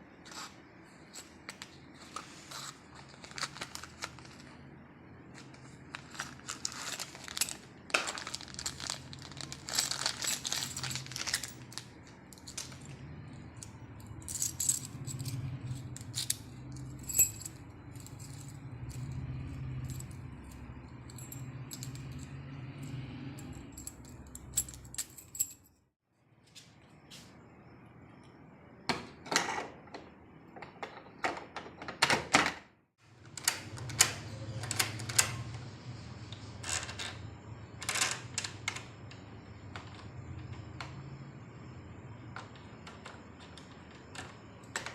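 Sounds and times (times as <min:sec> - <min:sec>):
small hard objects clinking: 0:05.9 - 0:12.9.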